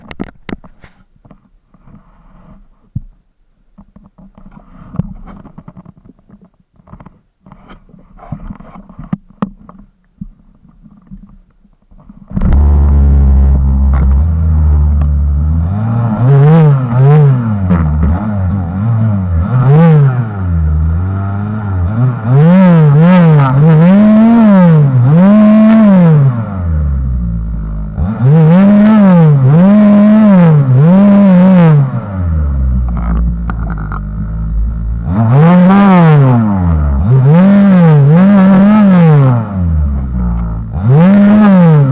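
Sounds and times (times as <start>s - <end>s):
chainsaw revving: 12.3s - 26.5s, 27.9s - 41.9s.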